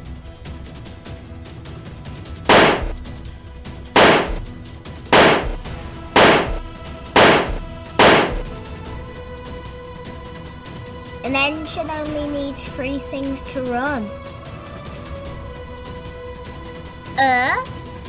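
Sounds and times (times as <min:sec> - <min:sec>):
background music: 0:00.0 - 0:18.0
loud sharp bangs: 0:02.5 - 0:03.1, 0:04.0 - 0:08.6.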